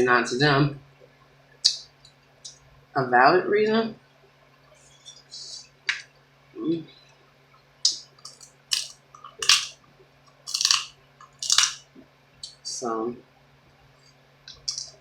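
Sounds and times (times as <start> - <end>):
wet chewing and biting: 8.2 - 9.7, 10.4 - 11.8.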